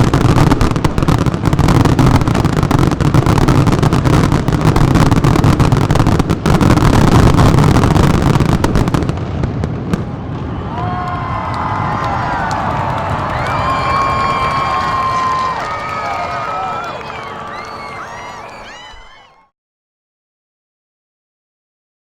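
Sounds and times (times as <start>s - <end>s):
fireworks bangs and crackles: 0.0s - 19.4s
crowd cheering and whistling: 10.0s - 19.5s.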